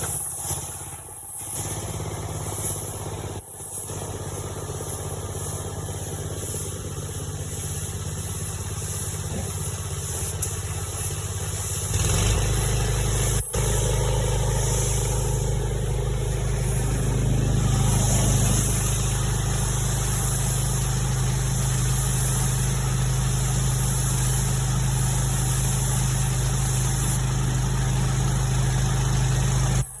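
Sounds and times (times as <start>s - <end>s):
vehicle engine idling: 0.0s - 30.0s.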